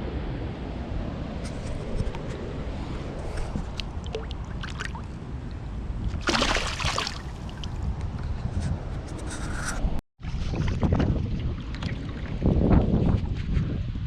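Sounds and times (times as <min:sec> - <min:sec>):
wind buffeting microphone: 0:00.0 - 0:14.0
water sloshing against kayak hull: 0:03.0 - 0:05.2, 0:06.1 - 0:07.8
water splash: 0:03.2 - 0:05.2, 0:06.1 - 0:07.8.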